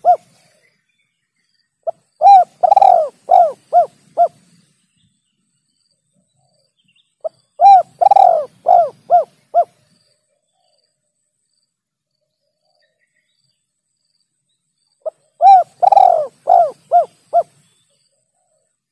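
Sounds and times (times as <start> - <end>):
dove cooing: 0.0 - 0.4, 1.9 - 4.4, 7.2 - 9.8, 15.0 - 17.6.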